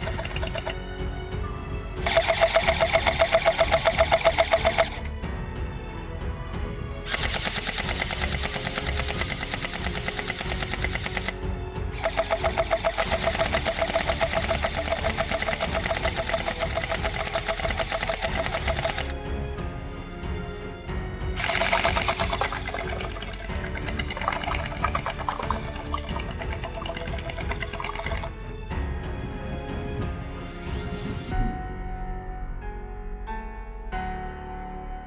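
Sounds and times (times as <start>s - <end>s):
gel blaster firing rapidly: 2.0s - 5.1s, 7.1s - 11.4s, 12.0s - 19.1s, 21.4s - 28.3s.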